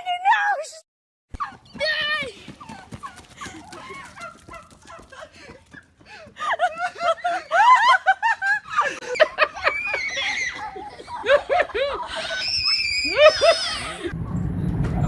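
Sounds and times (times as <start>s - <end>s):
person laughing hard: 3.0s - 14.1s.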